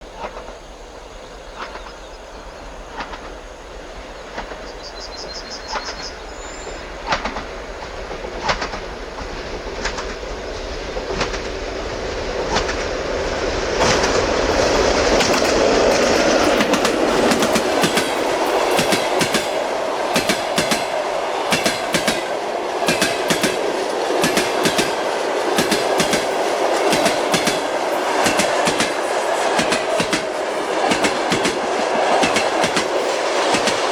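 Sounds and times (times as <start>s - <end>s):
train rumble: 0.0s - 33.9s
train wheels clacking on rail joints: 0.1s - 33.9s.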